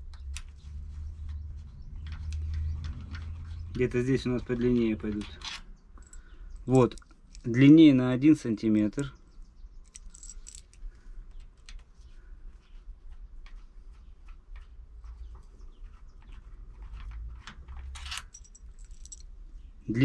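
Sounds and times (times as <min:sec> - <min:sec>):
tool and bolts clinking: 0:02.0 - 0:07.6, 0:09.8 - 0:10.9, 0:17.8 - 0:19.3.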